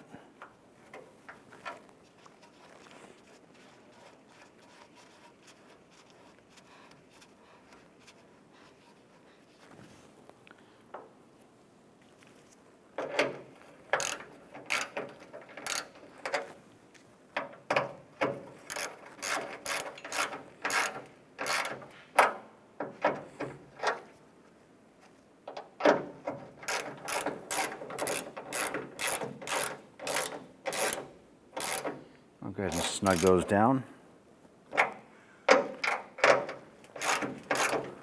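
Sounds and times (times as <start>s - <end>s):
hand ratchet clicking: 13.9s - 16.5s, 17.4s - 22.4s, 26.6s - 32.0s, 32.7s - 33.5s, 35.6s - 38.0s.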